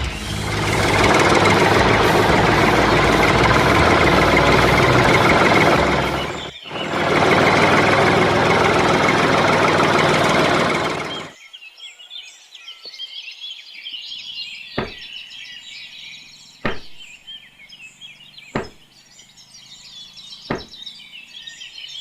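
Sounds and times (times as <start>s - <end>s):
engine running loudly: 0.0s - 11.4s
sharp knock: 14.8s - 15.1s, 16.6s - 17.0s, 18.6s - 18.8s, 20.5s - 20.8s.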